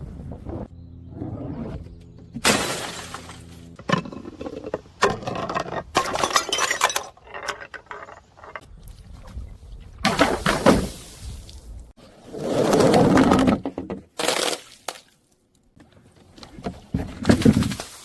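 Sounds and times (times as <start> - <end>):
low steady hum: 0.0 - 10.6
glass bottles shattering: 2.5 - 3.4, 5.3 - 8.2.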